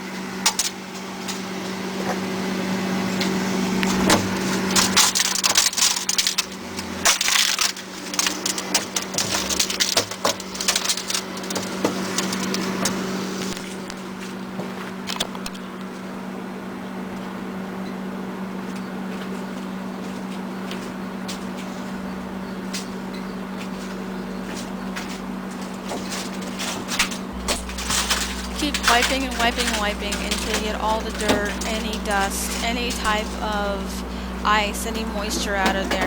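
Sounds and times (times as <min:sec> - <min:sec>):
steady hum: 0:00.0 - 0:36.0
ice crunching and crackling: 0:04.5 - 0:13.8, 0:25.0 - 0:36.0.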